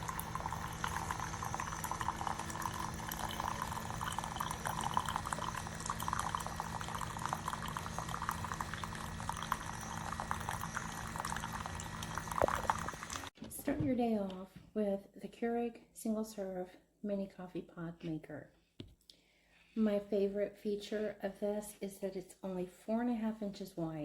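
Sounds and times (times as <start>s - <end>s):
coffee maker humming: 0.0s - 13.3s
coffee sputtering into cup: 0.0s - 13.3s.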